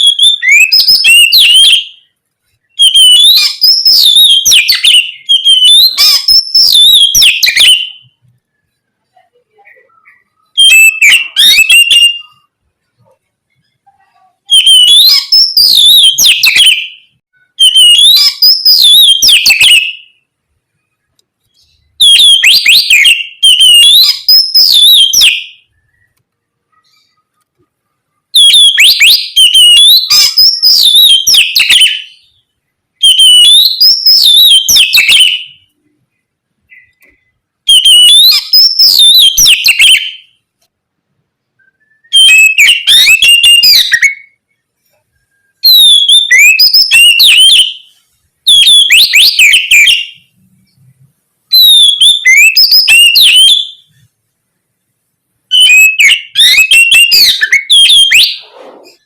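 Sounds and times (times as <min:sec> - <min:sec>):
bird singing whistles and chatter: 0:00.0 - 0:08.2, 0:09.4 - 0:12.6, 0:13.7 - 0:20.2, 0:21.5 - 0:26.2, 0:28.4 - 0:32.4, 0:33.0 - 0:35.7, 0:36.7 - 0:40.4, 0:41.6 - 0:44.4, 0:45.2 - 0:50.4, 0:51.5 - 0:53.9, 0:55.5 - 0:59.0.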